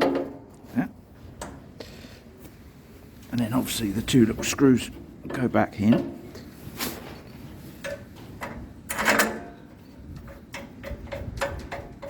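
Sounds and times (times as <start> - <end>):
metal parts clicking and knocking: 7.8 - 12.0.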